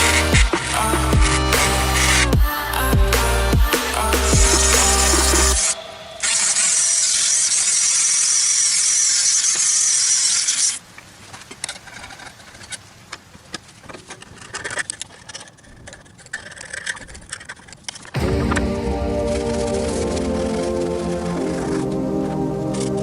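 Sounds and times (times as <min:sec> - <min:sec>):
power tool grinding metal: 0:00.0 - 0:03.3, 0:04.0 - 0:10.6.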